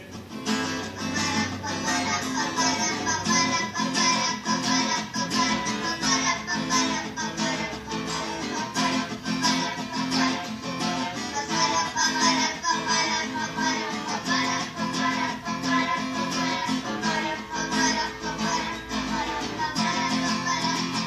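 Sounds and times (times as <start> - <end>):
acoustic guitar strumming: 0.0 - 21.0.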